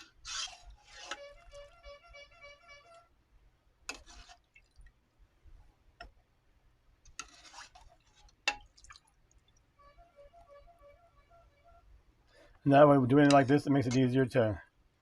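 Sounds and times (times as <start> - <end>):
liquid splashing: 3.9 - 5.0, 7.2 - 9.7.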